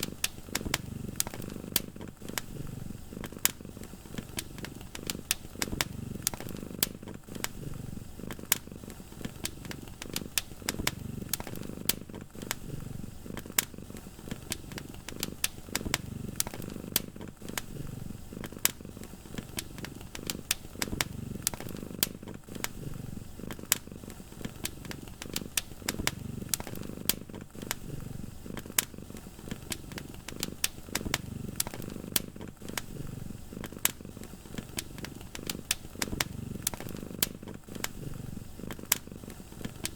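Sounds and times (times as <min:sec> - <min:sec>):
cat purring: 0:00.0 - 0:39.9
wood fire crackling and popping: 0:00.0 - 0:39.9.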